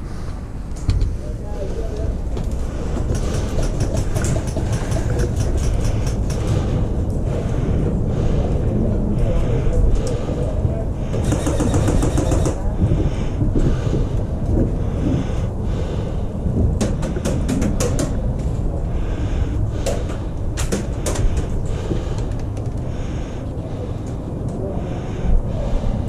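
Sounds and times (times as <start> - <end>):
wind rumble on microphone: 0.0 - 26.0
airsoft guns firing: 11.2 - 12.6.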